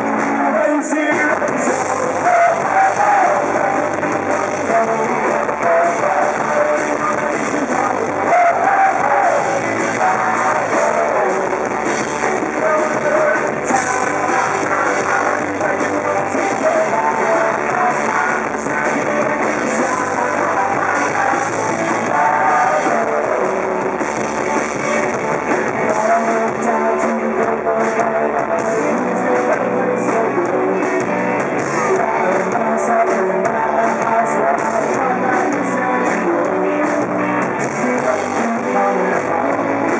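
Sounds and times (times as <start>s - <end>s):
electric guitar: 0.0s - 39.9s
rock band playing live: 0.0s - 39.9s.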